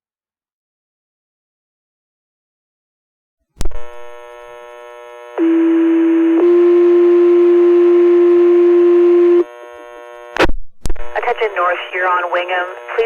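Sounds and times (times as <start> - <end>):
faint hum: 3.6 - 13.0.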